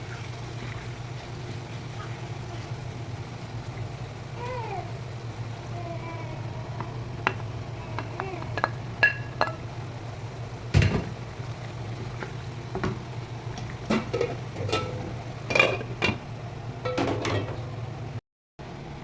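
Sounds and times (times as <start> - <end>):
steady low hum: 0.0 - 18.2
metal utensil scraping a pot: 13.9 - 16.2.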